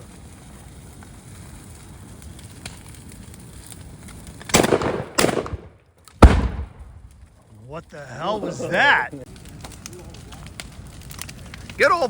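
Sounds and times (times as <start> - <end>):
fire crackling: 0.0 - 12.0
trash fire burning: 0.0 - 12.0
loud bursts: 4.5 - 7.1.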